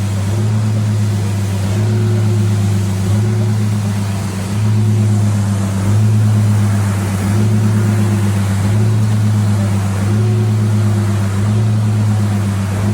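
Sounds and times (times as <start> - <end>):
engine running steadily: 0.0 - 12.9.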